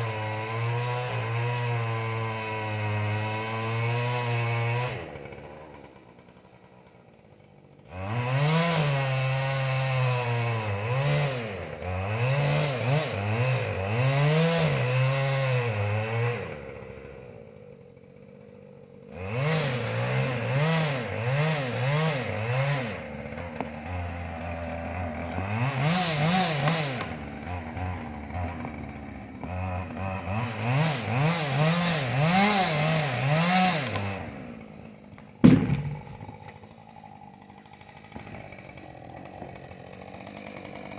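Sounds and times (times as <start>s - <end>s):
chainsaw revving: 0.0s - 40.9s.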